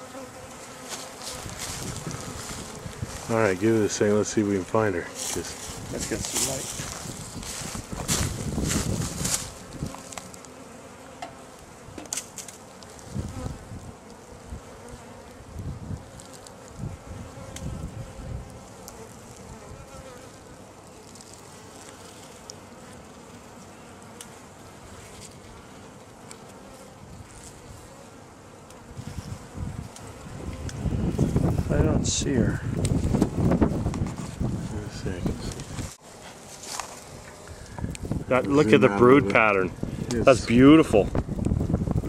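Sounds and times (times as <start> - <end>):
bees buzzing: 0.0 - 42.0
handling bumps and rustles: 5.2 - 10.3.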